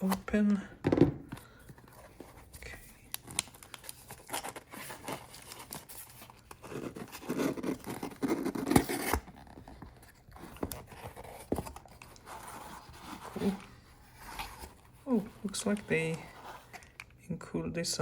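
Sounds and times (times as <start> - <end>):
packaging rustling and tearing: 1.8 - 17.2
cardboard box being opened: 3.4 - 16.9.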